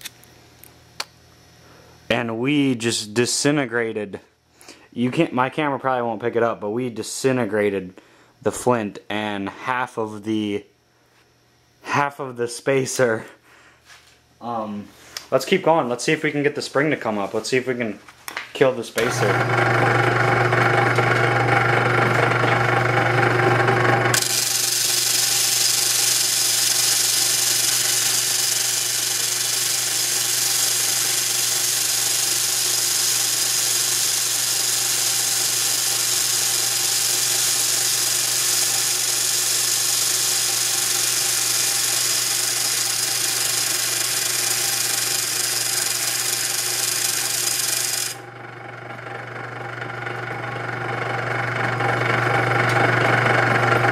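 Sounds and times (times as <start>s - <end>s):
power grinder motor hum: 19.0s - 53.9s.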